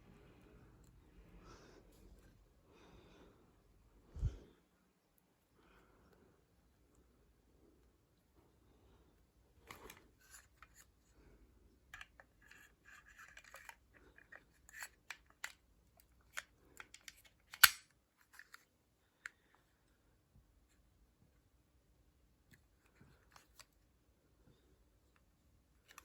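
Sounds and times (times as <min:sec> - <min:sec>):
pistol metallic clicks and rattles: 0:16.2 - 0:18.6.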